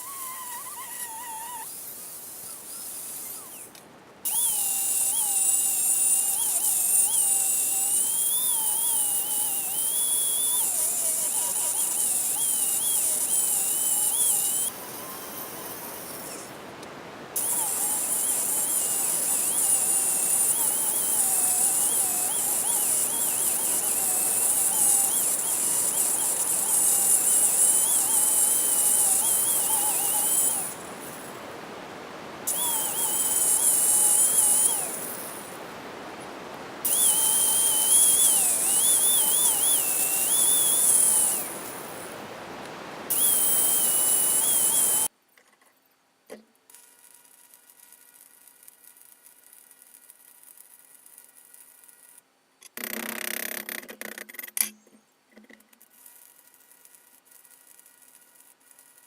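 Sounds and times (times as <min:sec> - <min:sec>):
angle grinder grinding steel: 0:00.0 - 0:45.1.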